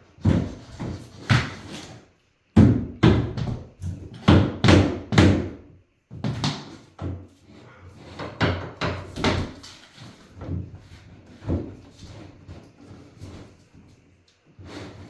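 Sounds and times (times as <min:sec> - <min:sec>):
heavy knocks on wood: 0:02.6 - 0:05.7.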